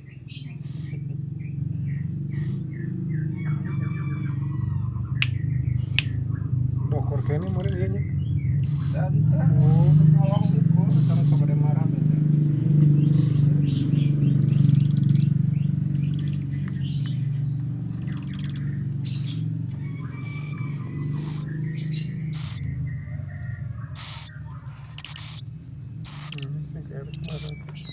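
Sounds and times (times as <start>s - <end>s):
steady low hum: 9.7s - 27.9s
owlet hiss-screech calls: 20.1s - 21.5s, 22.4s - 22.6s, 24.0s - 25.4s.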